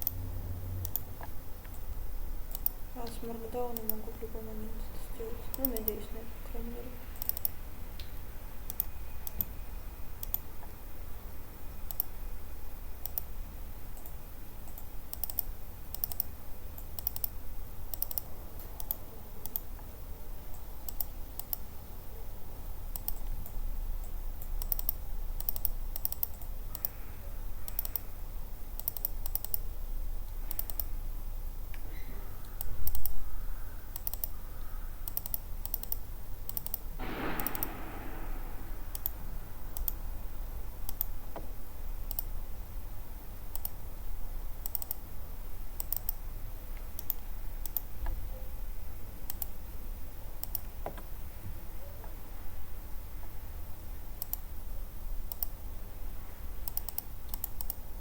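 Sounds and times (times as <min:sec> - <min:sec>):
keyboard and mouse clicks: 0:00.0 - 0:00.2, 0:00.8 - 0:01.9, 0:02.5 - 0:04.2, 0:05.5 - 0:06.0, 0:07.2 - 0:09.6, 0:10.2 - 0:10.8, 0:11.9 - 0:12.2, 0:13.0 - 0:13.3, 0:14.0 - 0:19.9, 0:20.5 - 0:21.7, 0:22.9 - 0:27.0, 0:27.7 - 0:28.1, 0:28.8 - 0:29.7, 0:30.3 - 0:30.9, 0:31.7 - 0:33.2, 0:33.9 - 0:34.3, 0:35.0 - 0:40.0, 0:40.9 - 0:41.5, 0:42.1 - 0:42.4, 0:43.5 - 0:43.8, 0:44.6 - 0:45.1, 0:45.8 - 0:46.2, 0:46.8 - 0:48.2, 0:49.2 - 0:49.6, 0:50.4 - 0:51.1, 0:54.2 - 0:54.5, 0:55.3 - 0:55.6, 0:56.6 - 0:57.8
low steady hum: 0:00.0 - 0:58.0
low thump: 0:37.0 - 0:40.6.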